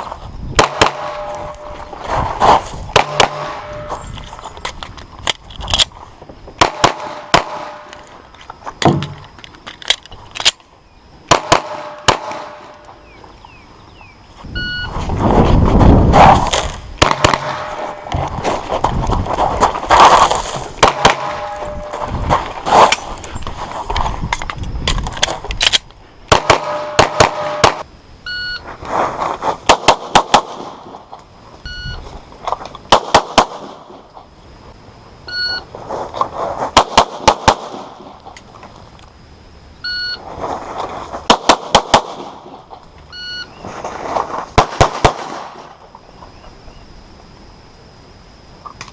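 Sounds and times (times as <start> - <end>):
pistol shots: 0.6 - 1.7, 2.9 - 3.9, 6.6 - 8.0, 11.3 - 12.8, 17.0 - 17.9, 20.8 - 21.9, 26.3 - 27.8, 29.7 - 30.9, 32.9 - 33.9, 36.8 - 38.1, 41.3 - 42.6, 44.6 - 45.7
short electronic beeps: 14.5 - 15.0, 28.2 - 28.7, 31.6 - 32.0, 35.3 - 35.7, 39.8 - 40.2, 43.1 - 43.6.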